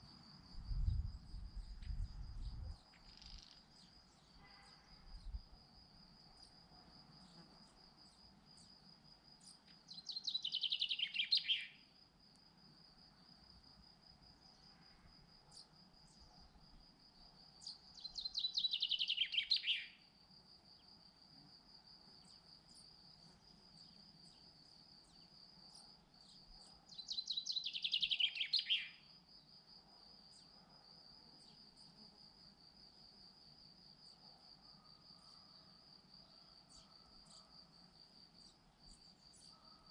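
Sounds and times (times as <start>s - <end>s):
songbird singing: 0.0s - 6.6s, 7.2s - 11.9s, 15.5s - 20.1s, 22.0s - 29.6s, 36.1s - 37.5s, 38.2s - 39.9s
high cricket trill: 0.0s - 39.9s.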